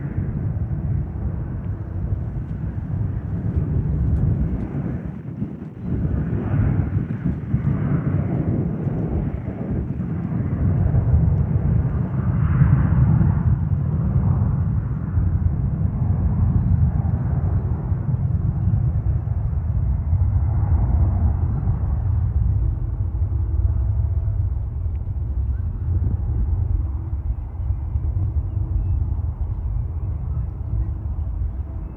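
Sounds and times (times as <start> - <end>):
jet engines rumbling: 0.0 - 31.9.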